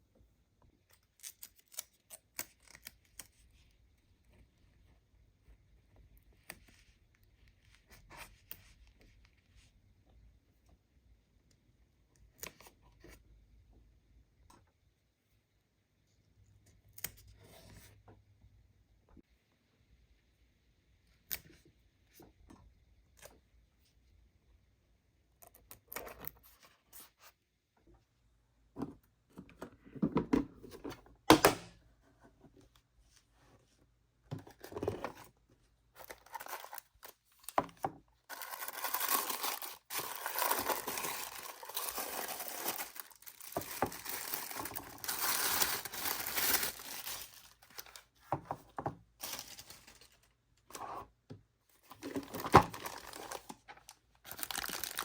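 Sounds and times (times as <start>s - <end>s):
wrapping crinkling and tearing: 36.0s - 37.5s, 38.3s - 48.0s, 49.2s - 50.3s, 52.0s - 55.0s.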